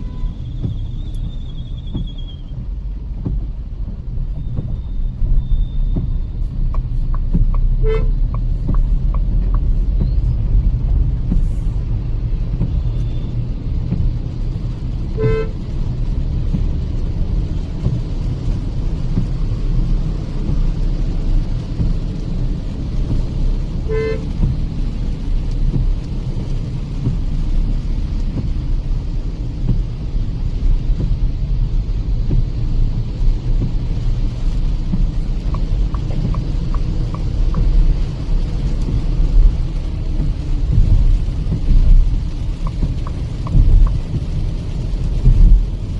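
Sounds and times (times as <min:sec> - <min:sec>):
car horn toots: 0:00.0 - 0:00.4, 0:07.8 - 0:08.2, 0:15.1 - 0:15.6, 0:23.8 - 0:24.4
car driving on highway: 0:00.0 - 0:45.9.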